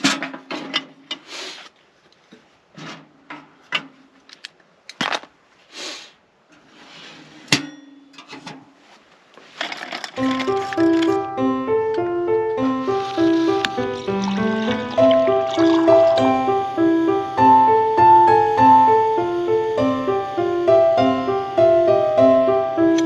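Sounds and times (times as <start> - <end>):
objects being handled: 8.2 - 11.2, 12.8 - 16.2
music: 10.2 - 23.0.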